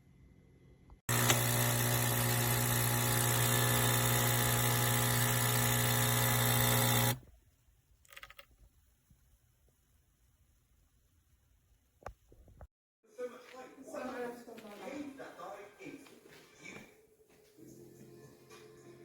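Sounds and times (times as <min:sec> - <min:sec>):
coffee machine pump buzzing: 0:01.1 - 0:07.2.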